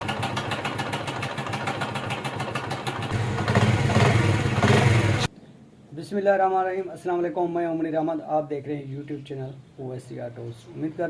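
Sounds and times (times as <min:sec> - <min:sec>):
motorcycle engine ticking rattle: 0:00.0 - 0:05.3.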